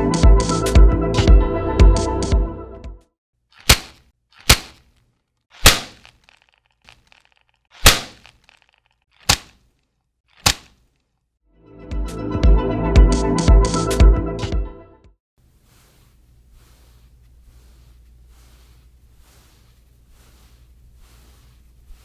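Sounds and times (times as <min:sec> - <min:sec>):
sharp cracking knocks: 0:03.6 - 0:04.9, 0:05.6 - 0:06.5, 0:07.8 - 0:09.6, 0:10.4 - 0:10.8.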